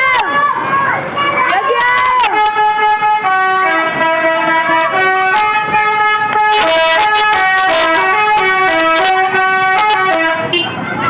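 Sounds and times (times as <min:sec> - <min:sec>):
musical air horn tune: 0:02.3 - 0:10.8.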